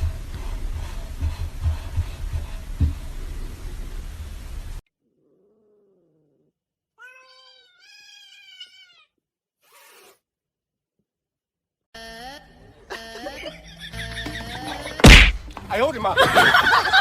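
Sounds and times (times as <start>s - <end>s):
cat meowing: 5.2s - 9.2s.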